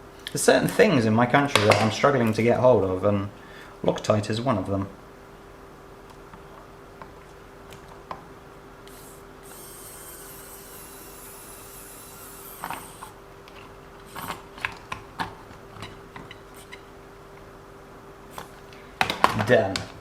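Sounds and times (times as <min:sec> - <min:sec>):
electric screwdriver whirring: 0:08.9 - 0:13.2, 0:14.0 - 0:14.4.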